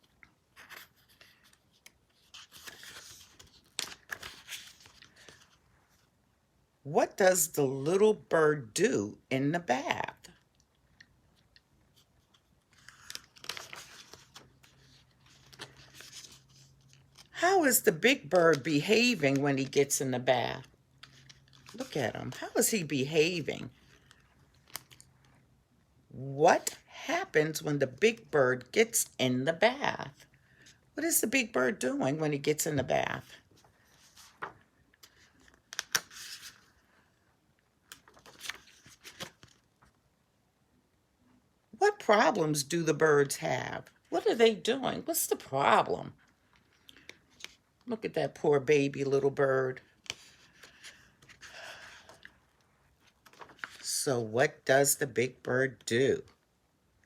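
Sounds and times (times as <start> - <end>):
book pages turning: 0.0 - 6.1, 11.0 - 25.2, 32.9 - 36.9, 37.8 - 40.0, 46.5 - 47.6, 49.1 - 53.9
paper rustling and crinkling: 0.5 - 6.1, 11.9 - 17.4, 20.5 - 22.4, 33.4 - 37.1, 37.9 - 40.0, 49.8 - 53.9.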